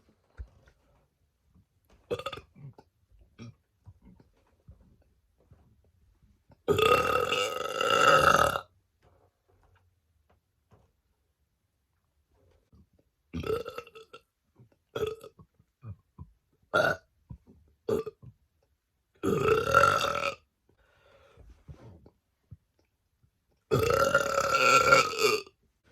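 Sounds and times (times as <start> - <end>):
woman burping: 6.7 - 8.6.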